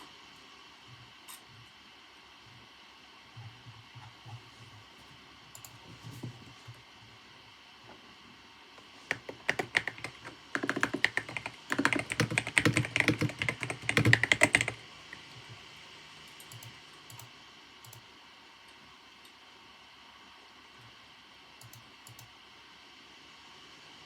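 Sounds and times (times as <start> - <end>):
typing on keyboard: 9.1 - 15.3, 16.4 - 17.3.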